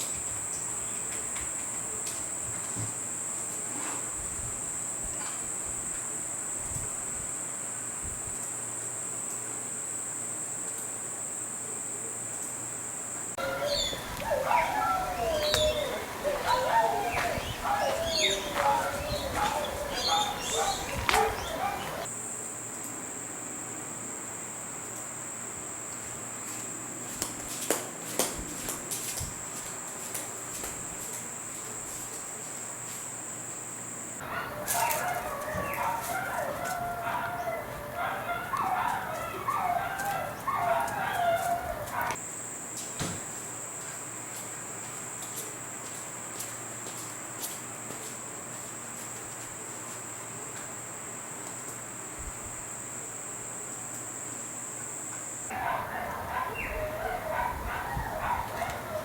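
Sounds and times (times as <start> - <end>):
dog yipping and whining: 13.4 - 22.1, 34.3 - 42.1, 55.5 - 59.0
wavering animal calls: 13.4 - 22.1, 34.2 - 42.2, 55.5 - 59.0.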